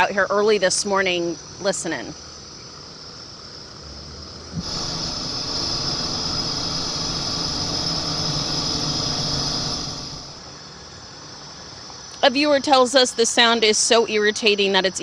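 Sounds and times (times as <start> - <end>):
loud hissing deterrent noise: 4.5 - 10.6.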